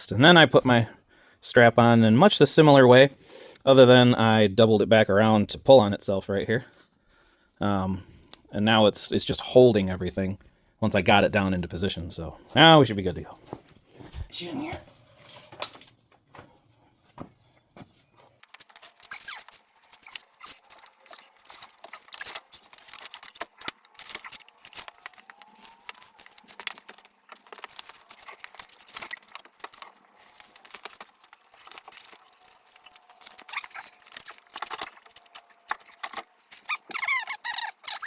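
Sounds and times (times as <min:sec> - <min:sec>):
clicks knocks and scrapes: 0:18.2 - 0:38.0.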